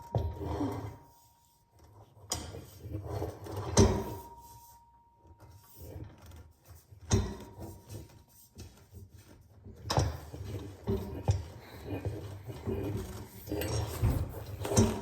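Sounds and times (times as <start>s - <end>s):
scraping and rattling: 7.2s - 15.0s.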